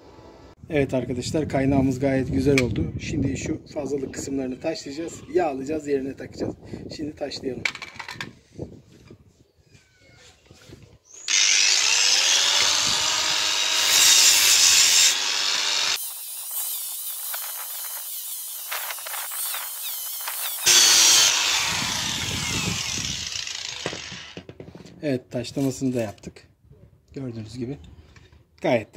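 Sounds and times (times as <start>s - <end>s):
angle grinder grinding metal: 11.2s - 24.4s.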